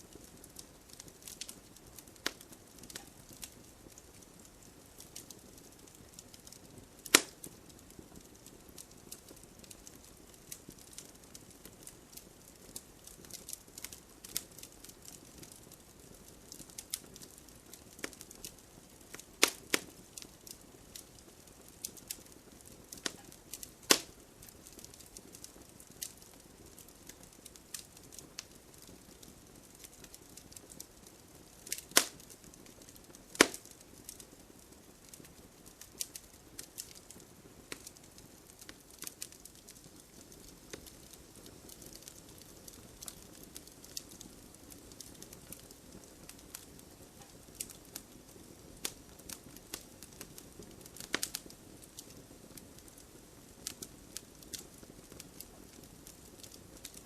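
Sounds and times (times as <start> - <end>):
campfire crackling: 0.0 - 57.0
faint hiss: 0.0 - 57.0
loud sharp pops: 7.1 - 7.4, 23.9 - 24.1, 33.4 - 33.7.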